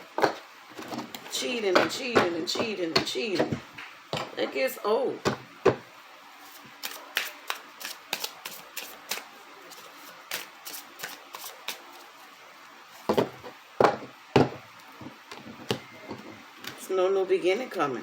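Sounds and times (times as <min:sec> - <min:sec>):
cards being shuffled: 0:06.4 - 0:12.2.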